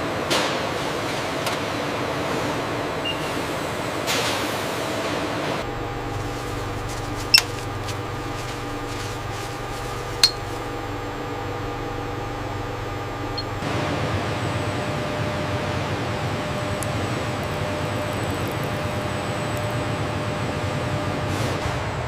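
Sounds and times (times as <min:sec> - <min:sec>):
machinery humming: 0:04.7 - 0:22.0.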